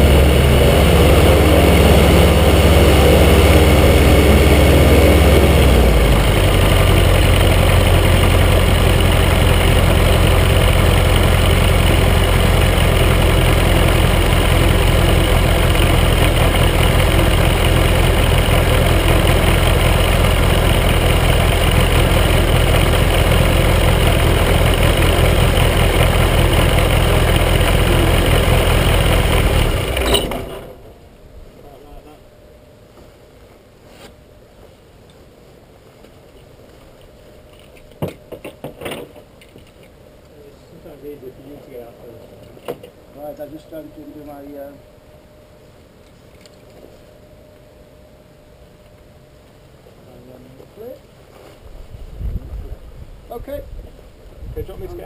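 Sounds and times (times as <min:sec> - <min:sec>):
microlight engine and propeller: 0:00.0 - 0:32.0.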